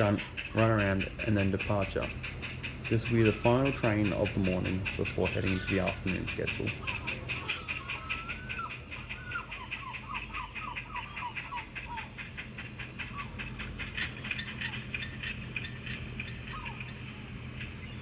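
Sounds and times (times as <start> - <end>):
fast even pulsing: 0.0 - 7.7
birds chirping: 0.0 - 18.0
steady low hum: 0.0 - 18.0.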